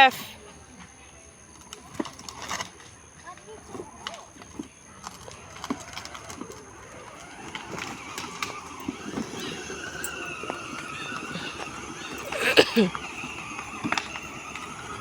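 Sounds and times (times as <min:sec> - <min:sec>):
electric motor whine: 0:05.0 - 0:15.0.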